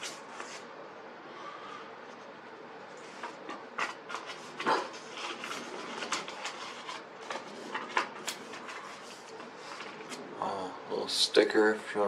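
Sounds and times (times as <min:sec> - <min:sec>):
paper and cardboard rustling: 0:03.0 - 0:10.2.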